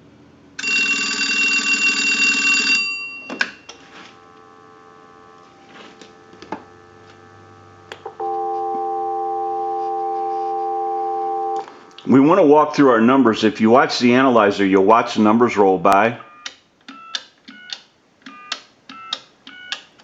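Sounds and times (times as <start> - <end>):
payphone bell ringing: 0.6 - 4.6, 8.2 - 11.6
telephone dial tone: 0.6 - 11.9.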